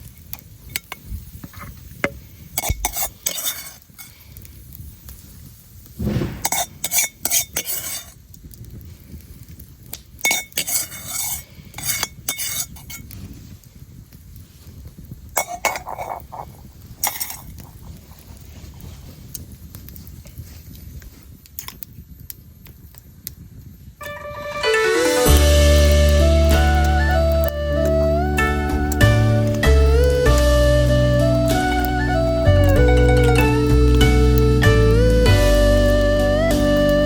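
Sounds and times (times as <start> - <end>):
low steady hiss: 0.0 - 37.0
metal utensil scraping a pan: 2.6 - 4.1, 6.0 - 8.2, 10.2 - 13.1, 15.4 - 18.2.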